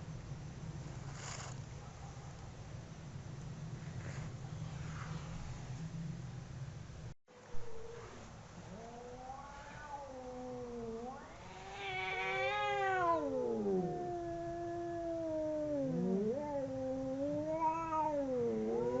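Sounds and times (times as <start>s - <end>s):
cats caterwauling: 8.6s - 19.0s.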